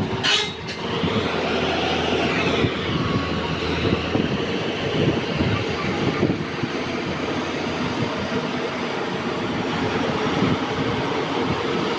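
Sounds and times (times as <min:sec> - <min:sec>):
diesel engine running under load: 0:00.0 - 0:11.9.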